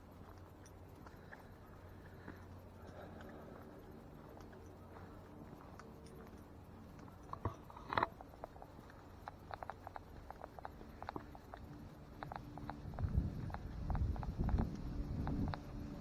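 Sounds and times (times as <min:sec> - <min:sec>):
low rumble: 0:11.3 - 0:16.0.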